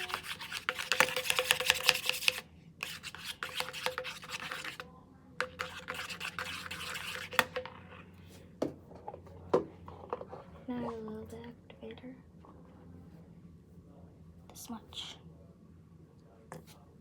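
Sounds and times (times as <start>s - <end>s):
slime being stirred: 0.0s - 8.1s.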